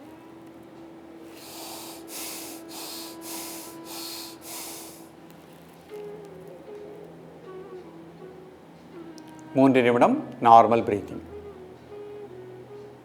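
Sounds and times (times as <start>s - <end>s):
person breathing sharply through nose: 1.2s - 5.2s.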